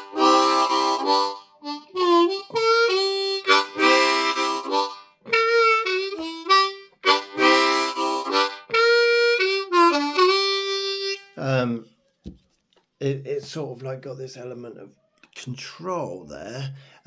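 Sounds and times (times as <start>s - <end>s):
harmonica playing: 0.0s - 11.6s
breaths: 16.7s - 17.0s.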